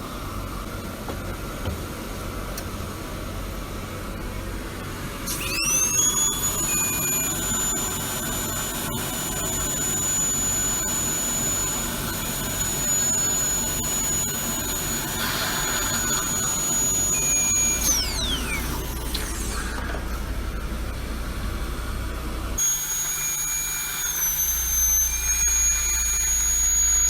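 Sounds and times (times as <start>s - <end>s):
dental drill high-pitched whine: 5.2s - 20.4s, 22.6s - 27.0s.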